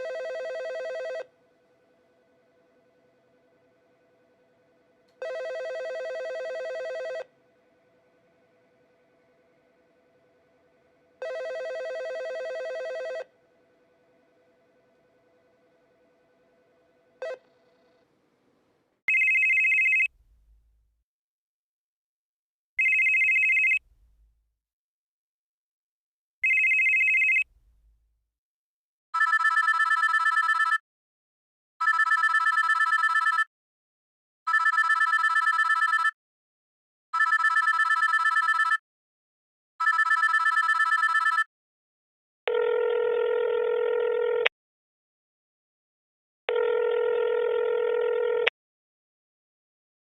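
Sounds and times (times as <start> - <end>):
electronic ring tones: 0.0 - 1.3, 5.2 - 7.3, 11.2 - 13.3, 19.1 - 20.1, 22.8 - 23.8, 26.4 - 27.4, 34.5 - 36.1, 37.2 - 38.8, 39.8 - 41.5, 42.5 - 44.5, 46.5 - 48.5
trilling telephone rings: 0.0 - 1.3, 5.2 - 7.3, 11.2 - 13.3, 19.1 - 20.1, 22.8 - 23.8, 26.4 - 27.4, 29.2 - 30.8, 31.8 - 33.5, 34.5 - 36.2, 37.2 - 38.8, 39.8 - 41.5, 42.5 - 44.5, 46.5 - 48.5.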